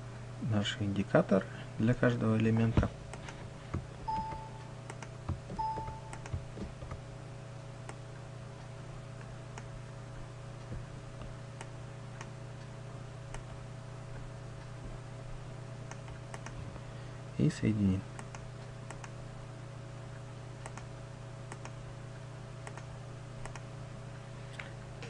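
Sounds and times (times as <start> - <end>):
steady electrical hum: 0.0 - 25.0
short beep: 4.1 - 4.6, 5.6 - 6.2
computer mouse and keyboard clicks: 15.9 - 16.6, 22.6 - 23.6.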